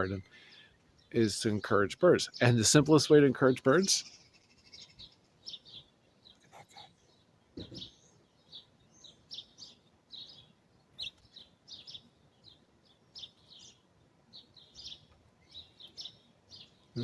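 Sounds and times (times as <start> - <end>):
songbirds chirping: 0.0 - 17.0
brief low thud: 7.6 - 7.9.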